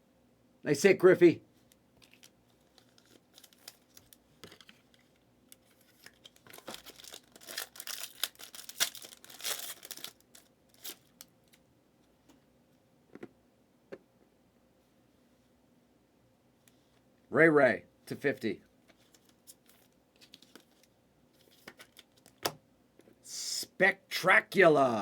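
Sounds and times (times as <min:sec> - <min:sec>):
foil pack tearing and crinkling: 0:02.0 - 0:04.2, 0:05.6 - 0:11.2.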